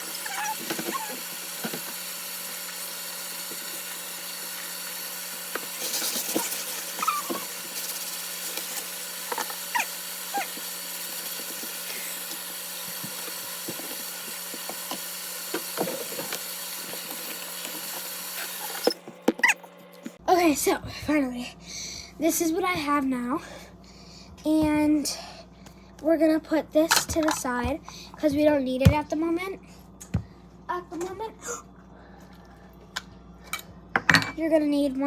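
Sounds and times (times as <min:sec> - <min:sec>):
small electric motor whirring: 0:00.0 - 0:19.8.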